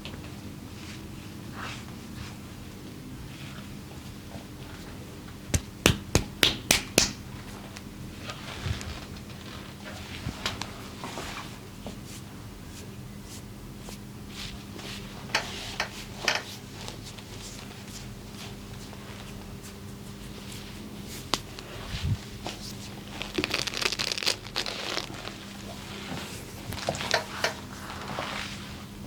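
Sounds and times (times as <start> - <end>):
steady low hum: 0.0 - 29.0
hands rustling on skin and clothing: 8.3 - 28.9.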